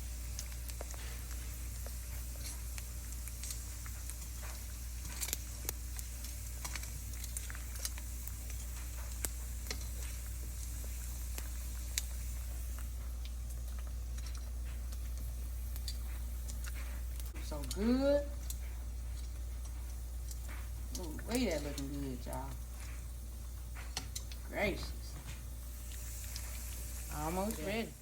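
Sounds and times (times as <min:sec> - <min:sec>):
food frying in a pan: 0:00.0 - 0:28.0
steady low hum: 0:00.0 - 0:28.0.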